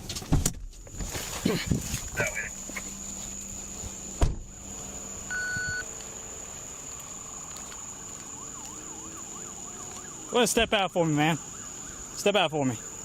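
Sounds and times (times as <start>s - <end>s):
short electronic beep: 5.3s - 5.8s
police siren yelp: 7.8s - 13.0s.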